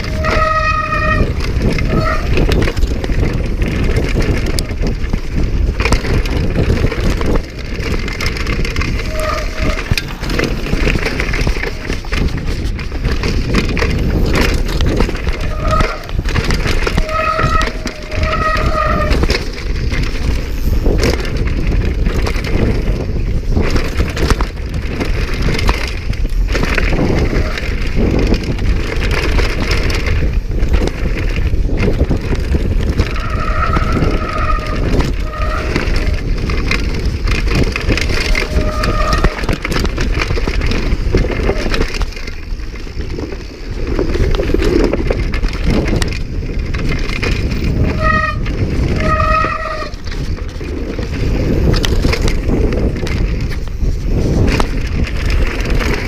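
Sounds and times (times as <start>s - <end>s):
disc brakes squealing: 0.0s - 2.4s, 16.8s - 19.2s, 33.1s - 36.3s, 38.2s - 39.5s
bike rattling over bumps: 0.0s - 56.0s
bike tyre roar: 0.0s - 56.0s
wind on microphone: 0.0s - 56.0s.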